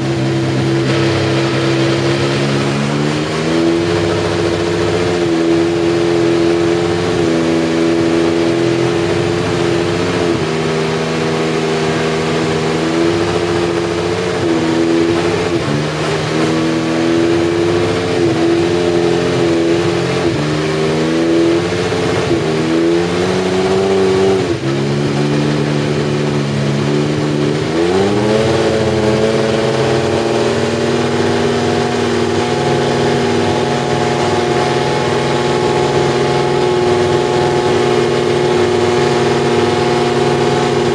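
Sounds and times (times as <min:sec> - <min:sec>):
racing car engine: 0:00.0 - 0:40.9.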